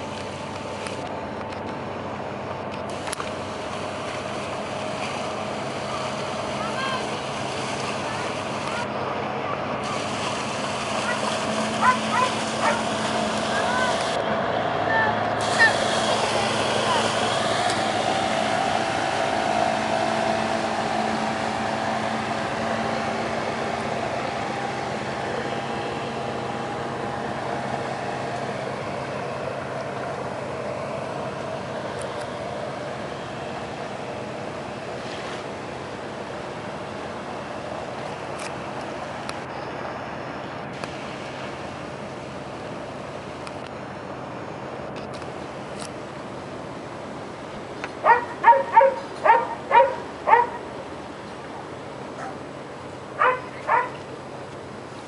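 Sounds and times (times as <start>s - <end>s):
machinery droning: 0.0s - 55.0s
dog barking: 12.2s - 12.8s, 48.0s - 50.6s, 53.2s - 54.0s.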